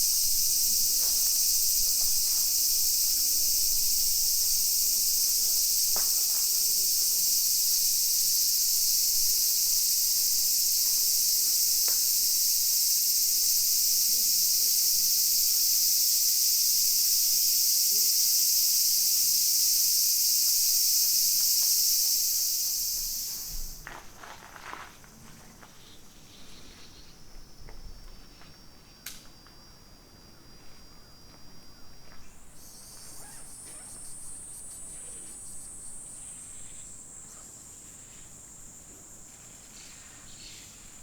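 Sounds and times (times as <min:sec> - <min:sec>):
insect chorus shrill hiss: 0:00.0 - 0:24.9, 0:25.6 - 0:41.0.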